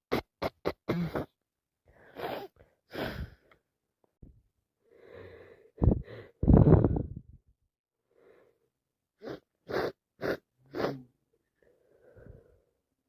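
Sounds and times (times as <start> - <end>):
person sniffing: 2.0 - 3.4, 9.2 - 11.1
wheezy breath: 4.8 - 6.4
person sneezing loudly: 9.2 - 11.1.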